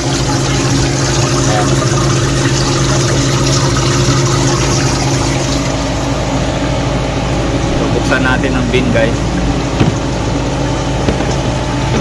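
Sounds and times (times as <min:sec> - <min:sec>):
ice machine humming: 0:00.0 - 0:12.0.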